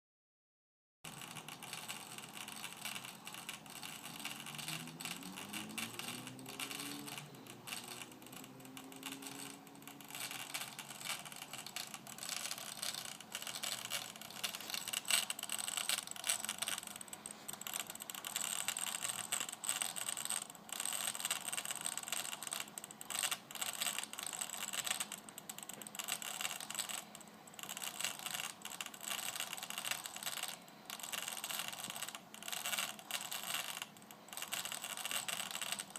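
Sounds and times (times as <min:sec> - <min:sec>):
hard disk whine: 0:01.1 - 0:20.8
hard disk clicking and rattling: 0:01.1 - 0:35.9.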